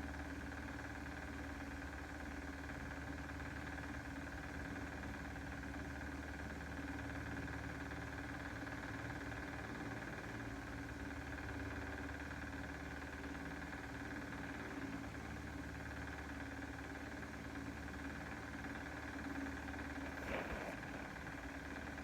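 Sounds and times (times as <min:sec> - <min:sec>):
motor humming with whine: 0:17.1 - 0:22.0.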